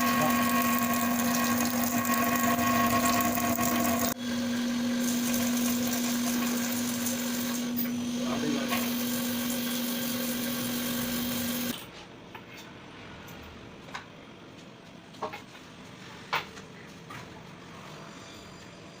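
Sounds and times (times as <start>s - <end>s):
machine humming: 0.0s - 11.8s.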